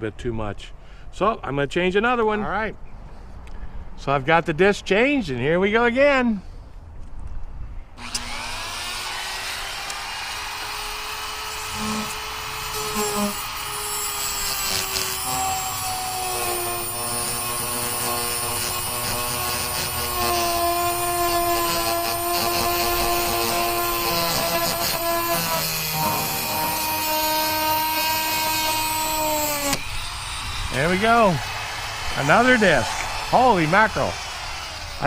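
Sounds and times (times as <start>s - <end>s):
rotary tool cutting into metal: 8.0s - 35.0s.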